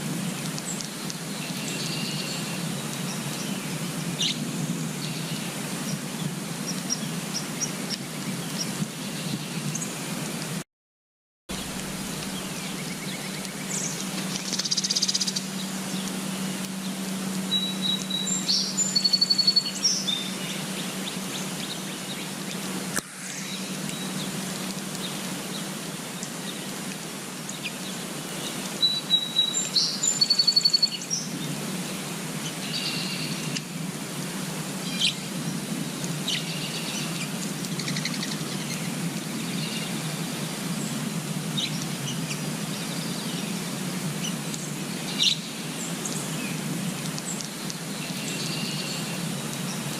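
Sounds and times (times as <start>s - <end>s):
outdoor background noise: 0.0s - 10.6s, 11.5s - 49.9s
songbird singing with rapid trill: 11.5s - 22.3s, 27.5s - 31.4s, 44.2s - 46.6s, 47.3s - 49.8s
bird chirps: 17.5s - 20.6s.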